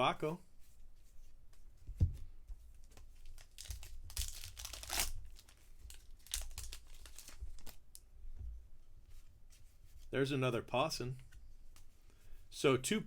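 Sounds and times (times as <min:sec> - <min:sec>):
foil wrapper crinkling and tearing: 0:03.2 - 0:07.9.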